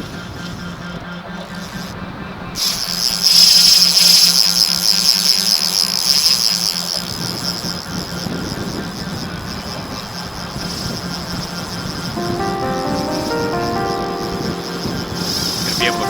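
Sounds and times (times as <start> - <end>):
fishing reel drag buzzing: 2.6 - 12.0.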